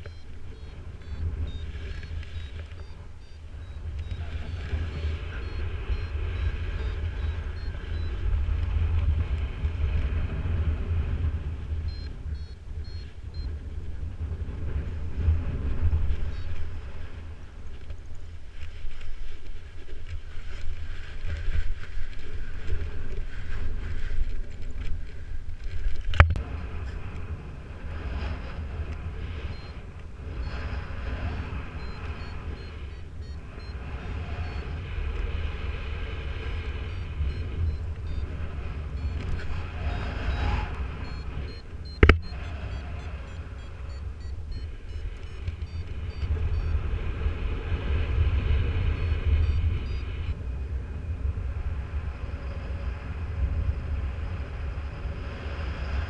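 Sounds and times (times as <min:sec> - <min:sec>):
variometer beeping: 0:00.0 - 0:08.4, 0:11.8 - 0:13.6, 0:16.2 - 0:16.9, 0:29.2 - 0:35.0, 0:36.3 - 0:47.0, 0:48.8 - 0:50.4
wind buffeting microphone: 0:00.0 - 0:56.0
sharp clicks: 0:41.0 - 0:42.6, 0:43.6 - 0:46.7.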